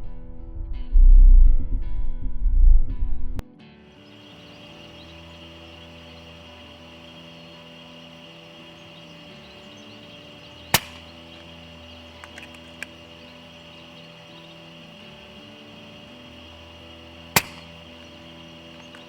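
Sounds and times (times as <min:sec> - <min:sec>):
soft background music: 0:00.0 - 0:19.0
faint clicks: 0:04.3 - 0:19.0
air rifle shot: 0:10.6 - 0:14.2, 0:17.2 - 0:18.9.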